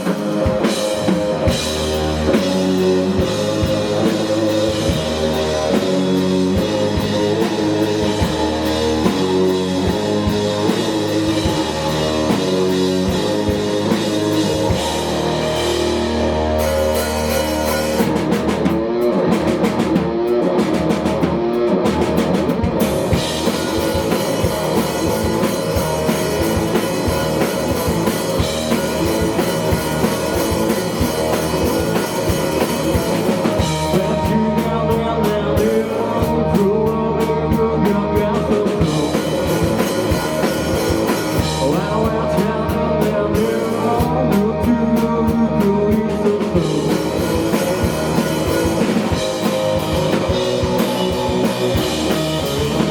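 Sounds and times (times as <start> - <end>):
rock band playing: 0.0 - 52.9
cymbals: 13.9 - 18.2.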